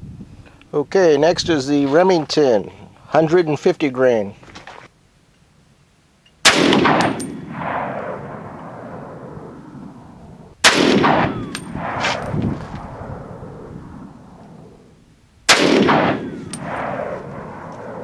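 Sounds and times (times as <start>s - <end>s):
rifle shot with rolling echo: 6.4s - 18.0s.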